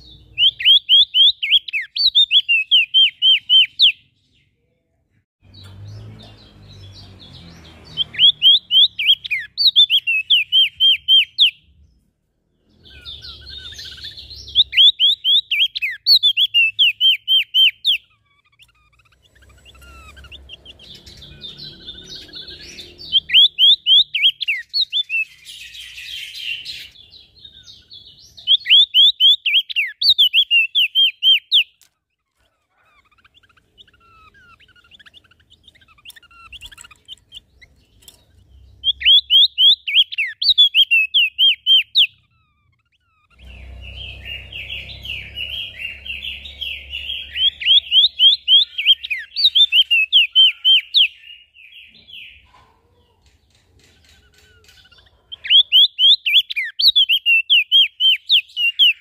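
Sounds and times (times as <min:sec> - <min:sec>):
songbird chirping: 0:00.0 - 0:59.0.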